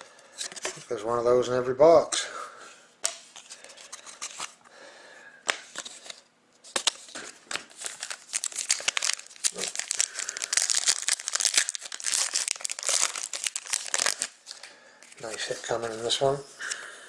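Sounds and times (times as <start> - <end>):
wrapper crinkling and tearing: 6.7 - 16.2.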